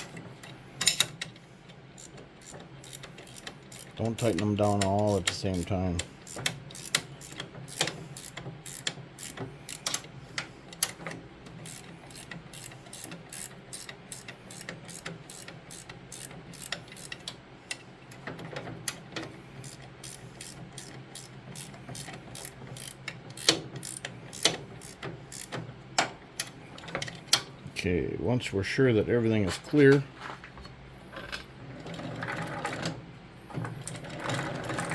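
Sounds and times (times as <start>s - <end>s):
ratchet wrench clicking: 2.0s - 10.1s, 11.6s - 17.8s, 19.6s - 25.6s.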